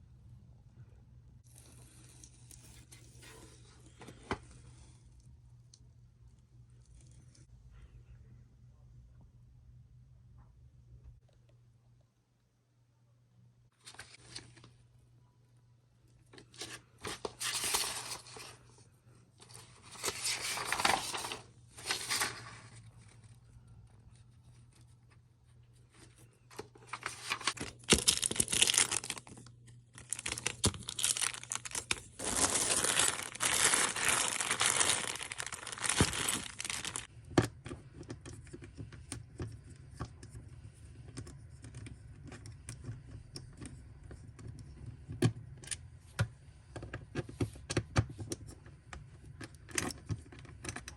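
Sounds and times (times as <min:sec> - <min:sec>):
packaging tearing and crinkling: 0:26.9 - 0:37.1.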